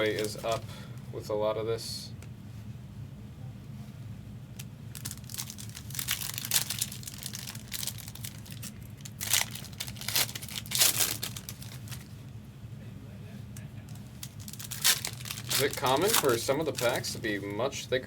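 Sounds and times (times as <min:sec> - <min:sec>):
foil wrappers crinkling and tearing: 0:00.0 - 0:00.6, 0:04.9 - 0:12.1, 0:13.9 - 0:17.4
steady low hum: 0:00.0 - 0:18.0.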